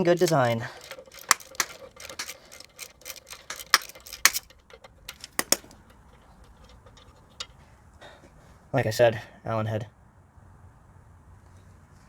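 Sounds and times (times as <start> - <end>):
socket ratchet clicking: 0.0 - 7.6
metal clinks: 0.0 - 7.7.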